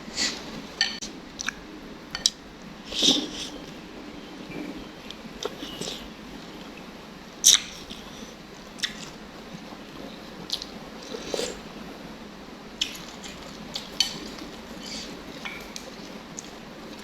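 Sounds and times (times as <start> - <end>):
person chewing: 1.4 - 1.6, 7.4 - 9.2, 10.4 - 11.8, 12.8 - 17.0.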